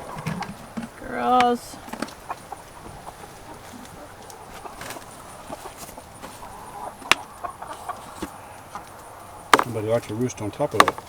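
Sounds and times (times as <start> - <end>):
chicken feeder knocking: 0.0 - 3.1, 6.2 - 8.8, 9.5 - 9.8, 10.7 - 11.0.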